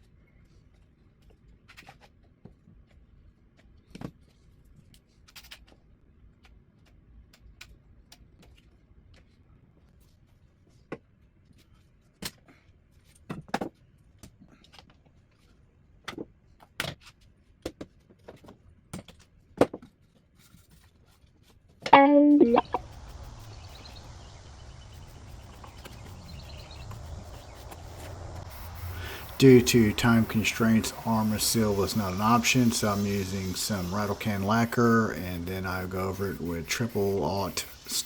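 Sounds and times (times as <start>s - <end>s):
faint low hum: 22.0s - 38.0s.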